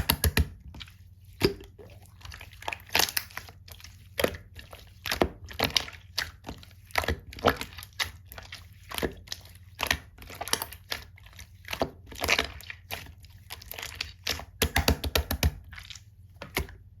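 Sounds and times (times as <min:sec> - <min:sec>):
slime clicking and popping: 0:00.0 - 0:00.6.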